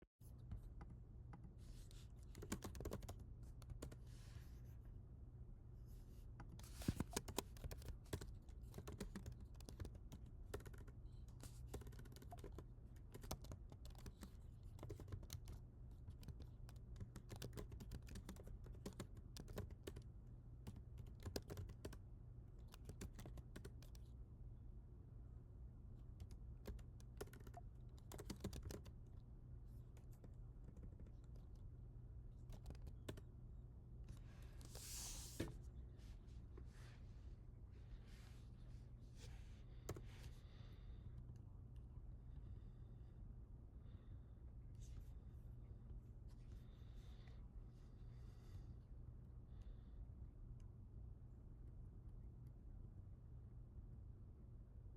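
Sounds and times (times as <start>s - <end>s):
steady low hum: 0.2s - 54.9s
typing on computer keyboard: 2.3s - 4.0s, 6.8s - 22.0s, 22.6s - 24.1s, 26.2s - 28.9s, 30.0s - 31.6s, 32.4s - 33.2s.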